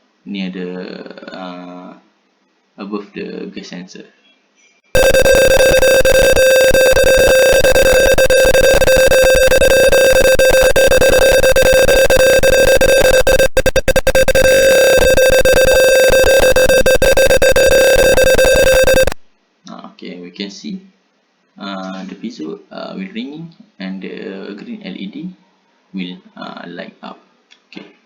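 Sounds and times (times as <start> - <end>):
buzzy alarm tone: 5.0 - 19.2.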